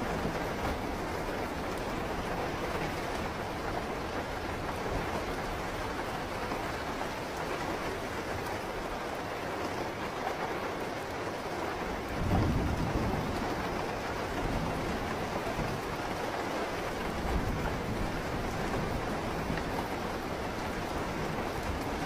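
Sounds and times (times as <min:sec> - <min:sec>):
steady rain: 0:00.0 - 0:22.0
thunder rumbling: 0:12.0 - 0:16.2.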